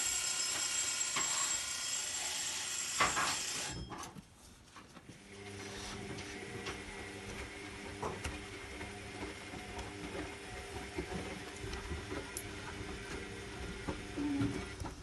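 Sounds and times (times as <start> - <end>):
washing machine motor humming: 5.2 - 15.0.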